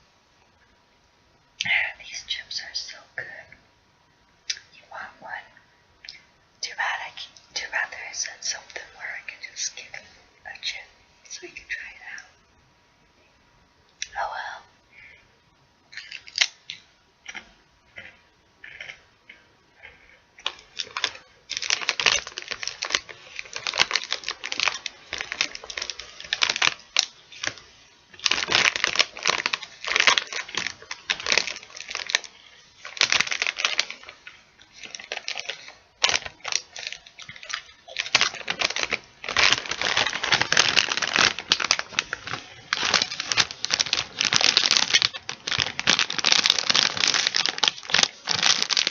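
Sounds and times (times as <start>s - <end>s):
plastic chip bag crinkling: 6.8s - 10.8s, 15.9s - 19.0s, 19.8s - 48.9s.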